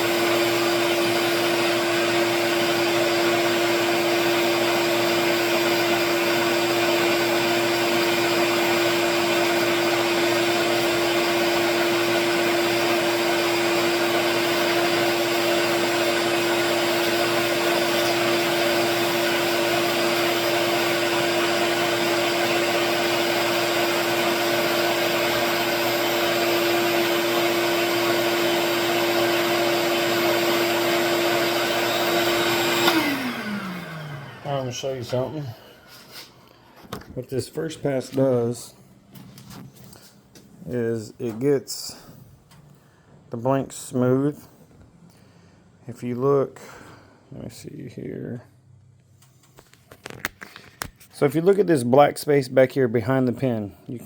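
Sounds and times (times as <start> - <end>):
wood lathe motor hum: 0.0 - 36.3.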